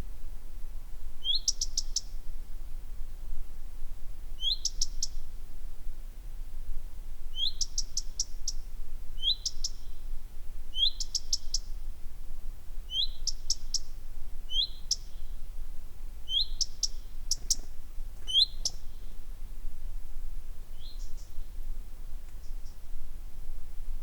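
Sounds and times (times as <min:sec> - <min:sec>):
small bird calling: 0:16.3 - 0:19.2.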